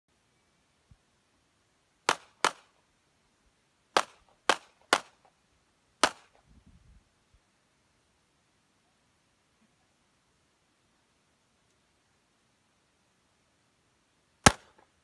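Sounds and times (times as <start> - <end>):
pistol shots with echo: 2.1 - 2.7, 4.0 - 5.2, 6.0 - 6.3, 14.4 - 14.8.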